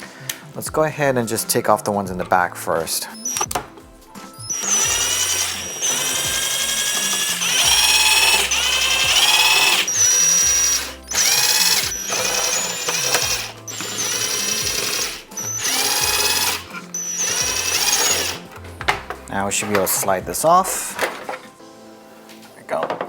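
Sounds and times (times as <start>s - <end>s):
power driver motor whining: 3.2s - 19.1s.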